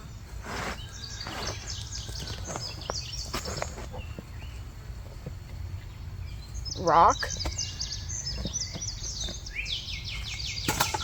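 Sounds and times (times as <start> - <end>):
hands scraping through dry soil: 0.0 - 4.4
faint birds chirping: 0.0 - 11.0.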